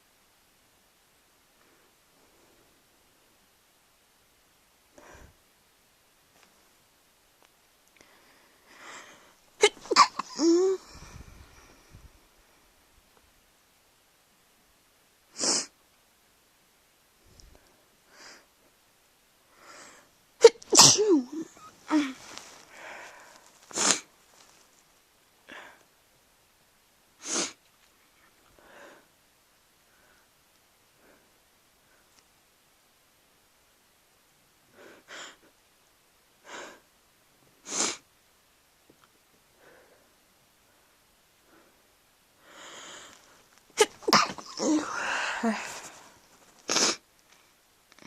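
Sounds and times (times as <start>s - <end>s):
faint breathing: 4.9s - 5.4s, 8.0s - 9.5s, 10.4s - 12.8s, 19.5s - 20.2s, 21.5s - 23.8s, 28.2s - 29.2s, 29.8s - 32.2s, 39.5s - 43.5s, 44.6s - 46.7s
stifled sneeze: 9.6s - 10.8s, 20.4s - 22.6s, 23.7s - 24.1s, 43.8s - 47.0s.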